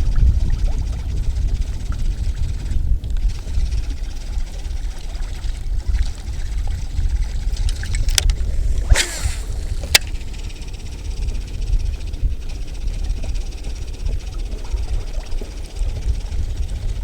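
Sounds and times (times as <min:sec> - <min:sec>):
wind buffeting microphone: 0:00.0 - 0:17.0
sharp clicks: 0:07.6 - 0:10.7.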